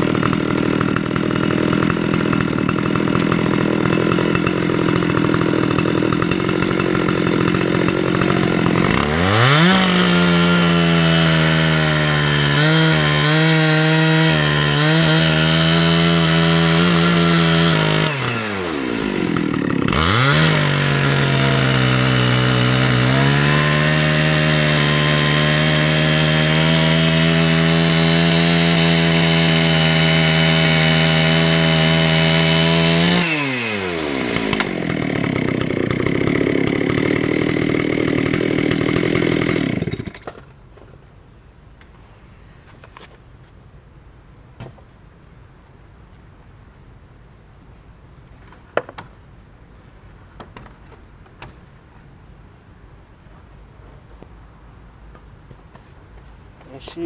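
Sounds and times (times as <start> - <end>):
chainsaw cutting log at full throttle: 0.0 - 40.4.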